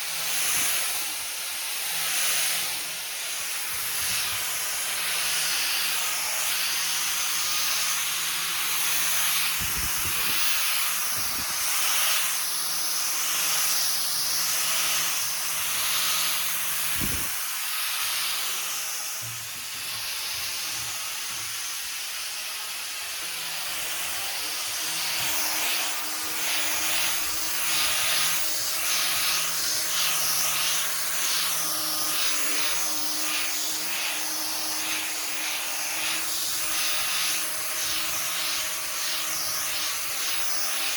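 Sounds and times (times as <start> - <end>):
orbital sander on wood: 0.0 - 40.9.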